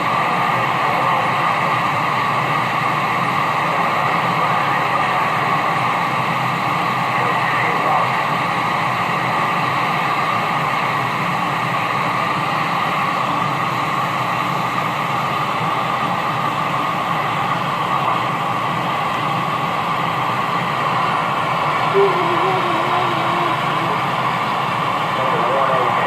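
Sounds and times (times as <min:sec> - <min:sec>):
radio static hiss: 0:00.1 - 0:01.7, 0:03.6 - 0:05.8, 0:07.0 - 0:08.2.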